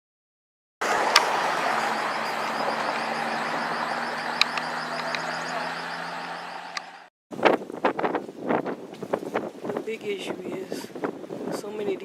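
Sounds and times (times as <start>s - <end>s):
vehicle engine hum: 0.8s - 7.1s
short high ticks or chirps: 1.1s - 7.0s.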